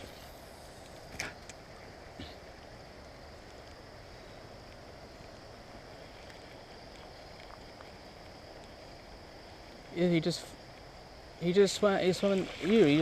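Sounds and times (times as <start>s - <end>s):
outdoor background rush: 0.0s - 13.0s
faint ticks: 2.2s - 11.0s.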